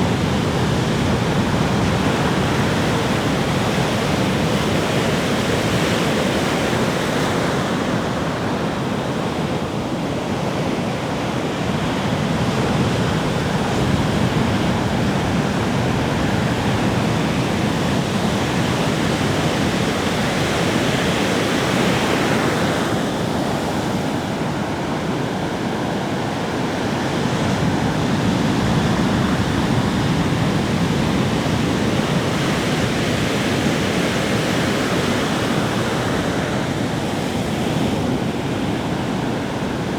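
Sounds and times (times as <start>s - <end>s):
waves breaking on shore: 0.0s - 39.9s.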